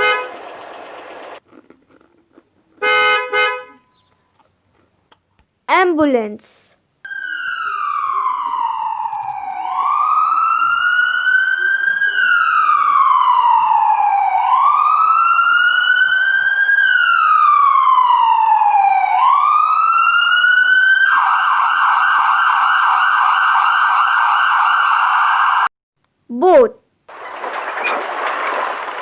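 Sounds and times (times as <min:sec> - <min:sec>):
ambulance siren wailing: 0:07.1 - 0:25.7.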